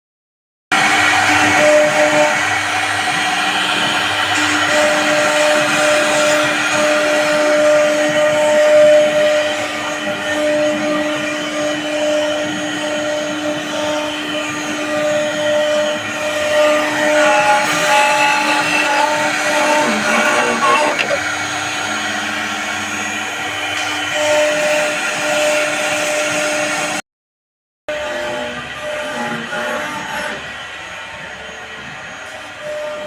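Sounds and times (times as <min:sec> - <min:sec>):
router motor whine: 0:00.8 - 0:26.4
router cutting wood: 0:00.8 - 0:26.9, 0:27.9 - 0:33.0.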